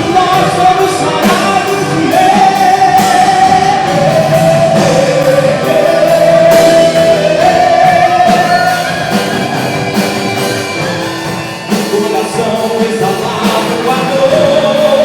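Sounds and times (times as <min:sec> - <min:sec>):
drum kit: 0:00.0 - 0:15.0
guitar: 0:00.0 - 0:15.0
melody in long notes: 0:00.0 - 0:15.0.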